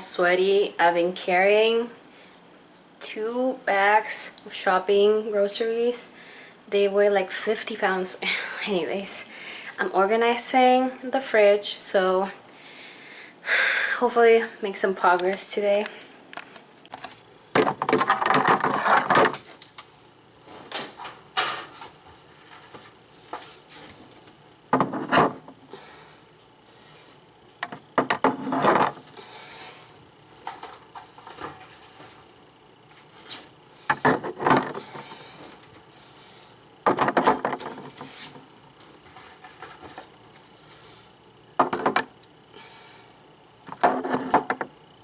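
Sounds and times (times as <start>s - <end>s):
containers knocking and clunking: 17.0s - 19.5s, 24.7s - 25.5s, 27.6s - 29.0s, 33.9s - 35.0s, 36.8s - 38.1s, 41.6s - 42.2s, 43.7s - 44.7s.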